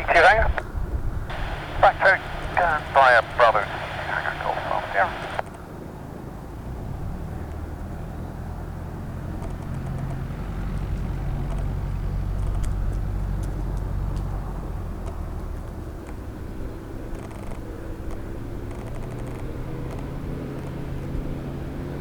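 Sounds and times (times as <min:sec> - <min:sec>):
light aircraft piston engine: 0:00.0 - 0:22.0
faint clicks: 0:01.3 - 0:05.7, 0:09.4 - 0:16.3, 0:17.1 - 0:21.1.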